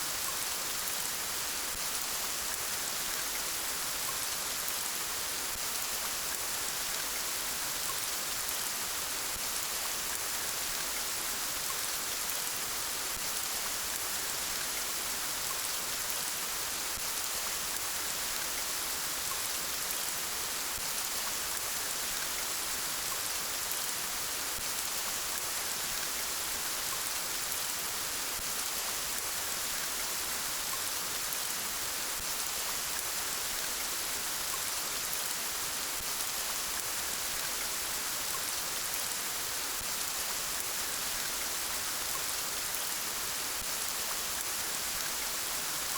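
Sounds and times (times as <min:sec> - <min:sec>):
steady rain falling: 0:00.0 - 0:45.9.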